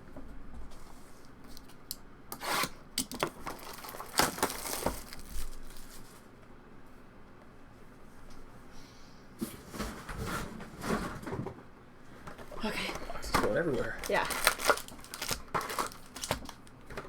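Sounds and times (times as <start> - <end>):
cardboard and wrapper tearing: 3.4 - 6.2, 13.7 - 16.7.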